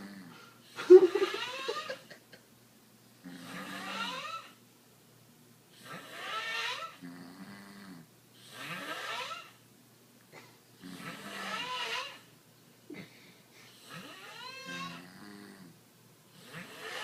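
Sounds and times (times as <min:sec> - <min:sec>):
person snoring: 0:03.2 - 0:04.5.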